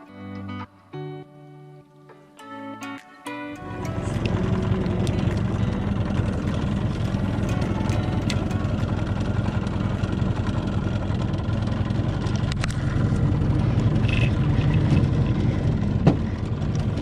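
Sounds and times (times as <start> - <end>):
outboard motor running: 3.6 - 17.0.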